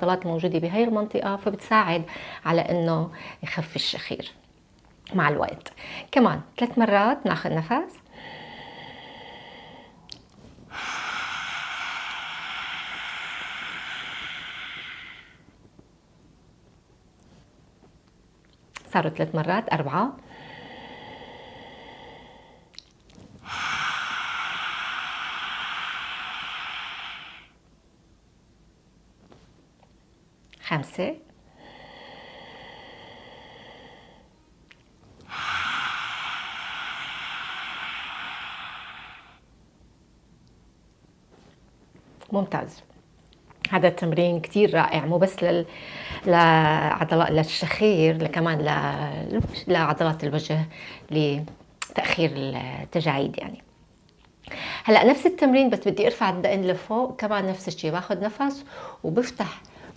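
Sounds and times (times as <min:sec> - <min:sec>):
loud breathy exhale: 0:08.1 - 0:15.5, 0:20.2 - 0:27.6, 0:31.5 - 0:34.3, 0:35.2 - 0:39.5
woman inhaling through nose: 0:08.1 - 0:15.5, 0:20.2 - 0:27.6, 0:31.5 - 0:34.4, 0:35.2 - 0:39.5.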